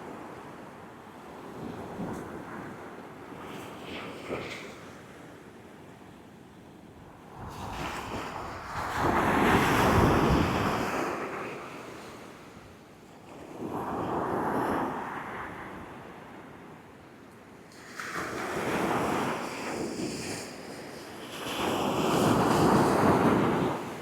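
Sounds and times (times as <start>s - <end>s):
wind buffeting microphone: 7.2s - 11.2s.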